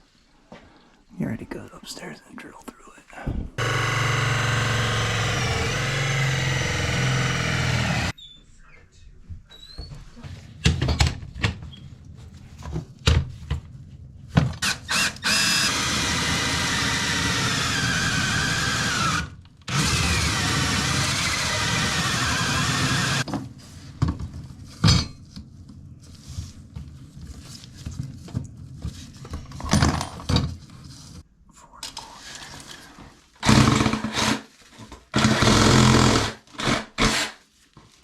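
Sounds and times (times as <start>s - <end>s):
power drill boring into wood: 3.6s - 8.1s, 14.6s - 23.2s, 33.4s - 34.5s, 35.1s - 37.4s
knocks and clatter of handling: 26.6s - 30.8s.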